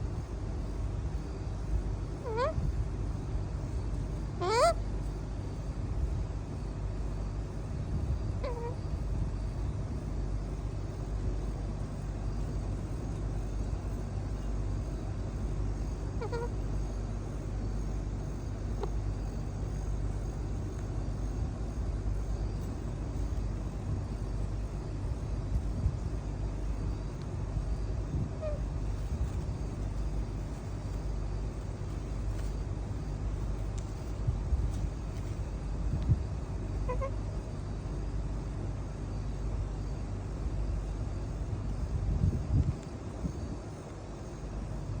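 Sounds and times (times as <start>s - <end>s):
steady low rumble: 0.0s - 45.0s
parrot calls sweeping up: 2.2s - 2.6s, 4.4s - 4.8s, 16.2s - 16.5s.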